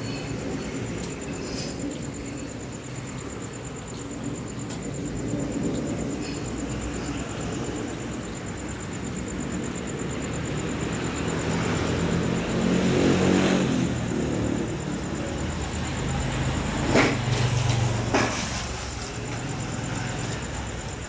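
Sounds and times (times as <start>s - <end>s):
passing vehicle engine: 5.2s - 21.0s.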